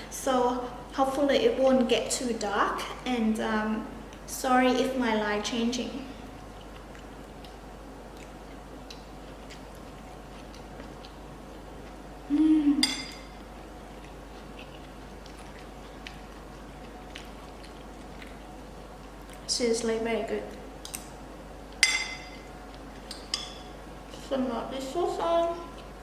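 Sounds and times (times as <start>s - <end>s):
chewing: 6.2s - 12.1s, 12.8s - 19.5s, 25.4s - 26.0s
person humming: 12.3s - 12.9s
utensil clinking on a dish: 21.8s - 22.5s.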